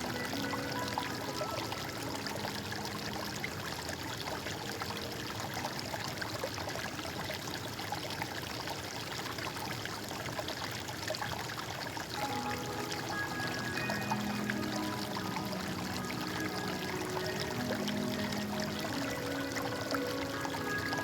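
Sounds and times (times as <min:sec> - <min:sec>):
stream running with splashes: 0:00.0 - 0:21.0.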